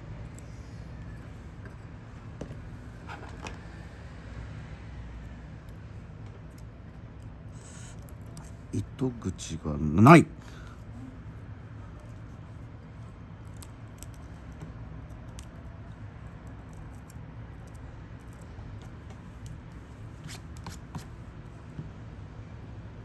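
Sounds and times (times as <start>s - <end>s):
small tools clicking and scraping: 5.6s - 8.7s, 13.4s - 15.7s, 16.3s - 21.1s.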